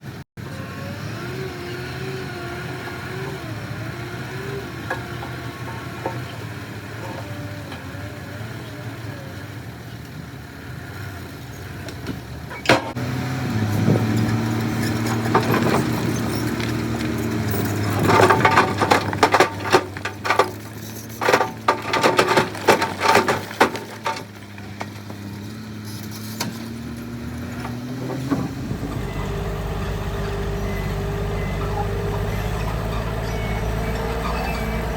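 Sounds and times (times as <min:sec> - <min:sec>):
heavy machinery diesel engines: 0:00.0 - 0:34.9
loud rattling knocks and clatter: 0:14.0 - 0:25.4.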